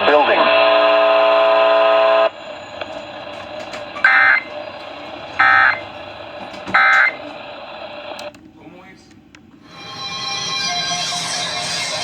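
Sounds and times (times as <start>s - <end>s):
warbling data bursts: 2.3s - 6.0s, 6.7s - 7.2s
steady electronic buzzing tone: 4.0s - 4.6s, 5.4s - 5.8s, 6.7s - 7.2s.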